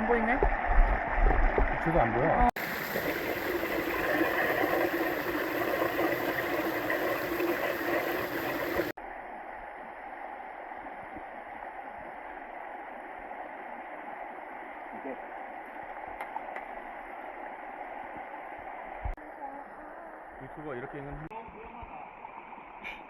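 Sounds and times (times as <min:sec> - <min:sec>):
stream water rushing over rocks: 0:02.6 - 0:08.9.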